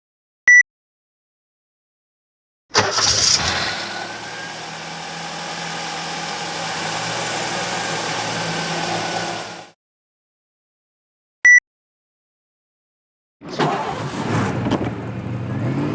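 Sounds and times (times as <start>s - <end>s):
car engine idling: 2.8s - 9.7s.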